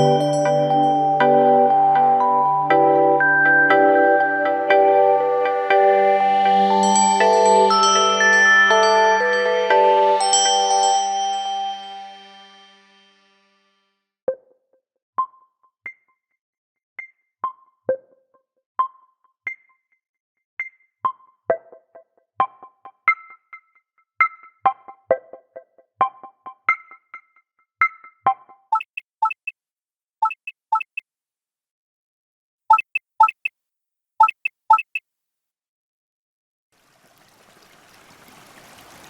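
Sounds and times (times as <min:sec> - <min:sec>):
electronic plucked melody: 0:28.8 - 0:29.5, 0:30.2 - 0:31.0, 0:32.7 - 0:33.5, 0:34.2 - 0:35.0.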